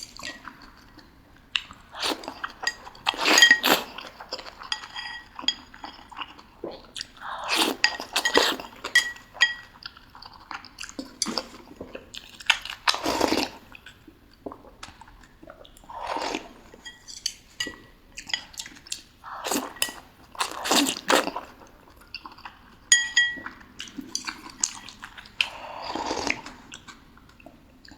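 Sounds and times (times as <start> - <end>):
utensil clinking against bowl: 2.3 - 6.2, 7.6 - 9.8, 16.8 - 18.6, 19.5 - 20.0, 22.9 - 23.6.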